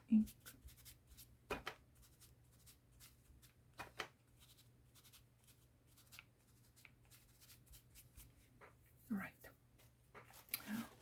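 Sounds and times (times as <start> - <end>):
taps and scrapes on paper: 0.4 - 2.3, 3.7 - 5.2.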